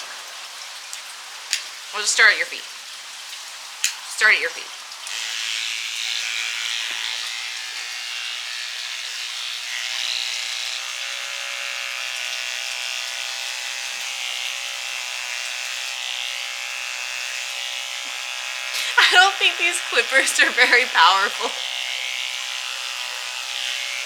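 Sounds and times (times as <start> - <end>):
electric hair clippers buzzing: 5.0 - 24.0.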